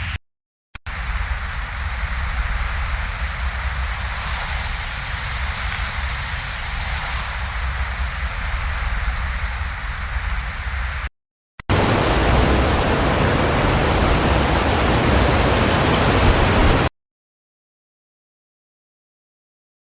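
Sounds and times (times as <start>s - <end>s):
wind blowing through trees: 0.9s - 11.1s.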